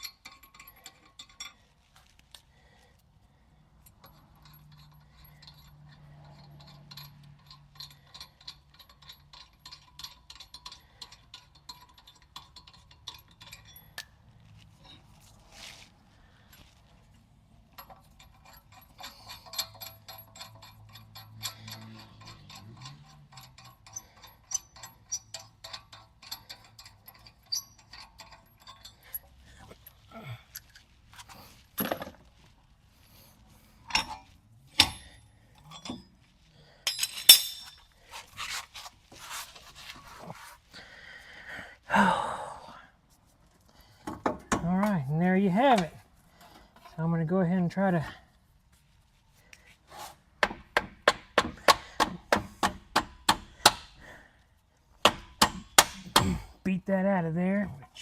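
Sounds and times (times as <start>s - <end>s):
metal clinks and knocks: 0.0s - 2.5s, 3.7s - 15.7s, 16.4s - 32.7s, 33.6s - 40.4s, 43.6s - 47.1s
metallic clicking of hand tool: 17.8s - 29.3s, 33.9s - 36.0s.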